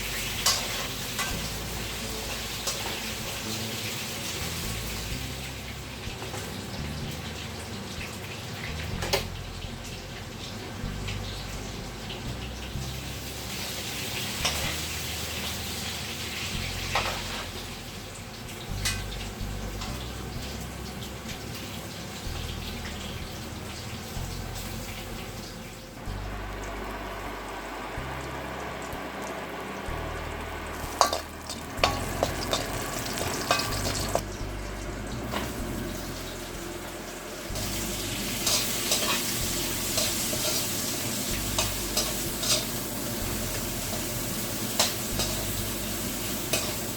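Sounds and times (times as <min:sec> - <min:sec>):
meat sizzling in a pan: 0:00.0 - 0:25.8, 0:27.7 - 0:46.9
utensil clicking against pan: 0:30.9 - 0:34.2.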